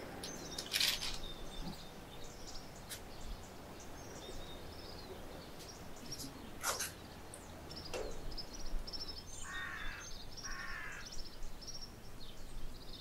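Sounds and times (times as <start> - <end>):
small birds chirping: 0.0 - 13.0
harsh raspy caws: 9.4 - 11.1.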